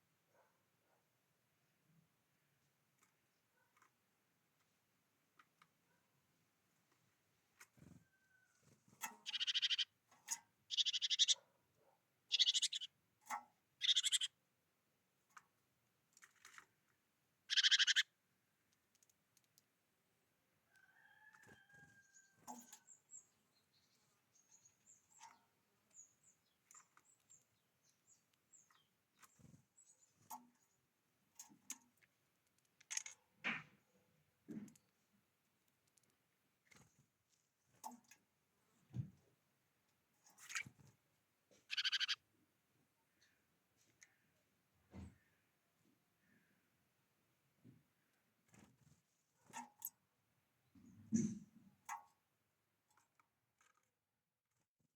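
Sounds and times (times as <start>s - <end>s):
bird harsh calls: 9.2s - 9.9s, 10.7s - 11.4s, 12.3s - 12.9s, 13.8s - 14.3s, 17.5s - 18.0s, 41.6s - 42.2s
high bird chirps: 9.2s - 9.9s, 10.7s - 11.4s, 12.3s - 12.9s, 13.8s - 14.3s, 17.5s - 18.0s, 41.7s - 42.2s.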